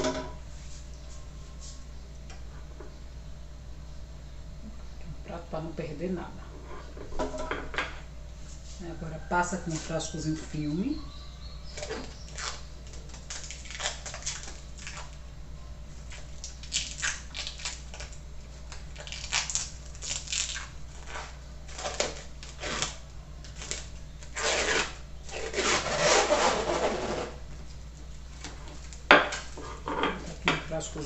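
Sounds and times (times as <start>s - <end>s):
cling film crinkling: 11.7s - 15.2s, 15.9s - 29.6s.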